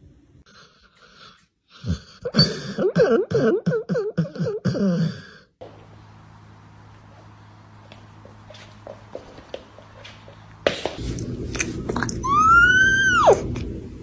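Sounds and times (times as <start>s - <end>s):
low steady hum: 5.6s - 14.0s
cat meowing: 12.2s - 13.4s.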